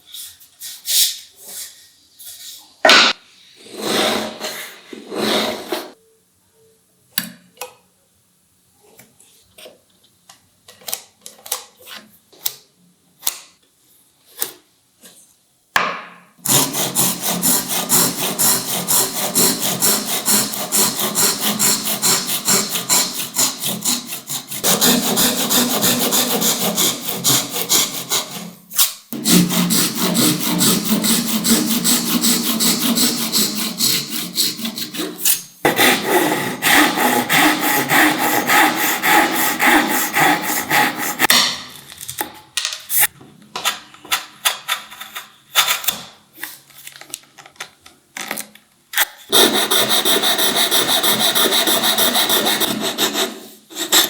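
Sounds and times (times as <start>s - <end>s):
hand saw cutting wood: 16.4s - 41.4s, 49.3s - 54.0s.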